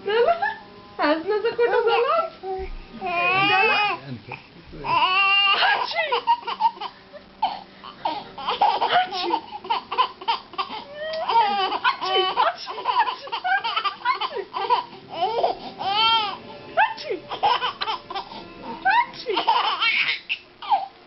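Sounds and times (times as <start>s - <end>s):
baby giggling and squealing: 5.5s - 16.3s, 19.2s - 20.9s.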